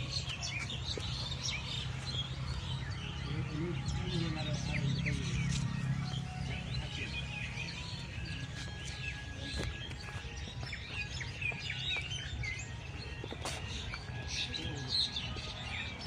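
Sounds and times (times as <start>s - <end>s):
small birds chirping: 0.0s - 16.0s
low steady hum: 1.7s - 9.5s.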